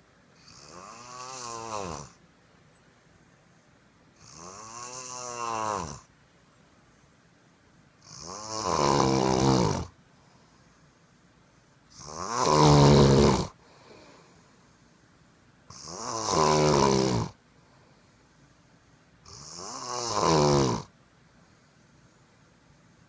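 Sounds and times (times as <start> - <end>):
quiet breathing: 0.0 - 8.1, 9.1 - 12.7, 13.3 - 16.0, 16.9 - 19.8, 20.8 - 23.0
man snoring: 0.4 - 2.2, 4.2 - 6.1, 8.0 - 10.0, 11.9 - 14.1, 15.7 - 17.4, 19.2 - 20.9.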